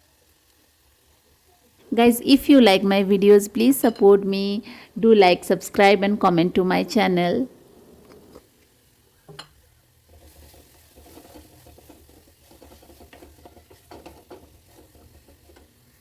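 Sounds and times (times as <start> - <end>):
paste frying: 0.0 - 16.0
spatula scraping paste in a pan: 10.0 - 16.0.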